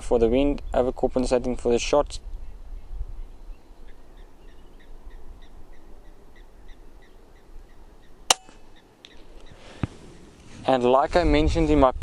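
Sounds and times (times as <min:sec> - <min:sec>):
air rifle shot crack: 0:08.3 - 0:09.2
faint pellet impact smack: 0:08.3 - 0:09.2.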